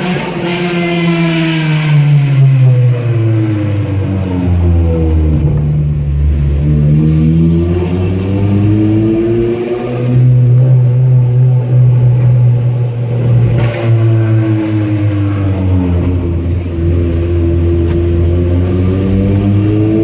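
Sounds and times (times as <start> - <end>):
car engine revving loudly: 0.0 - 20.0.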